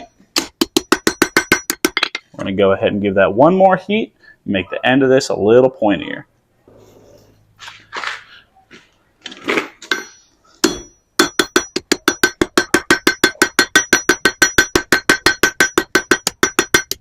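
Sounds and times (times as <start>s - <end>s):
hammer striking iron on anvil: 0.0s - 2.2s, 9.9s - 17.0s.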